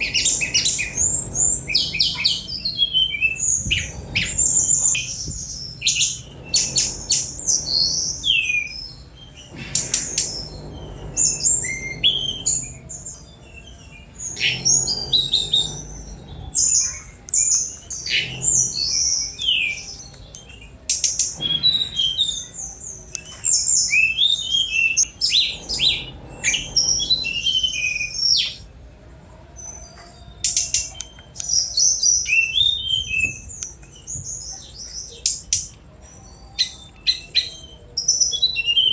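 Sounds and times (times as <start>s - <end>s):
flycatcher singing: 0.0s - 28.9s, 29.5s - 38.9s.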